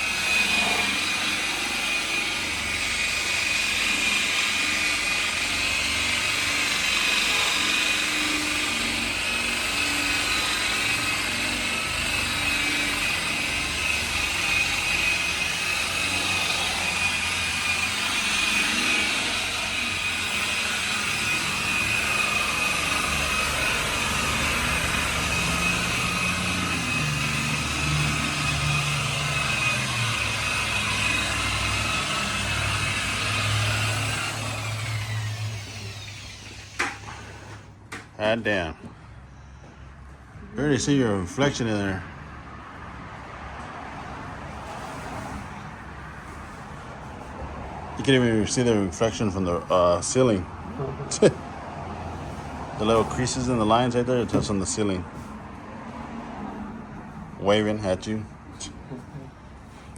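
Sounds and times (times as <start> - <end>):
machine polisher whining: 0.0 - 38.0.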